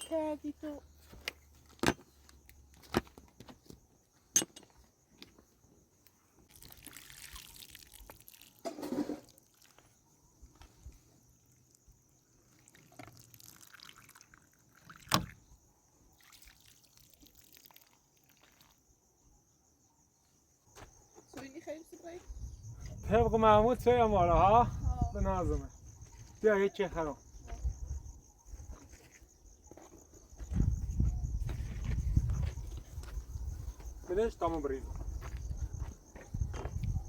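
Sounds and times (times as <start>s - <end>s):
cricket trill: 0.0s - 37.0s
water pouring and splashing: 6.5s - 9.9s, 12.4s - 15.4s, 16.2s - 18.8s.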